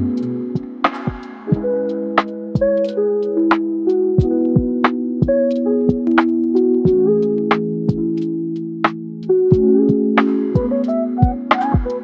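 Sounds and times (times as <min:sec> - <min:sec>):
steady drum beat: 0:00.0 - 0:03.0, 0:04.2 - 0:06.1, 0:09.6 - 0:12.0.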